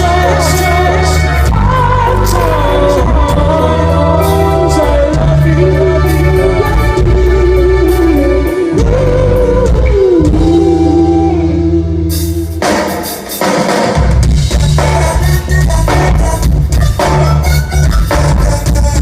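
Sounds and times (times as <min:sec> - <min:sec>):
bending lead guitar line: 0:00.0 - 0:12.9
rock band playing live: 0:00.0 - 0:19.0.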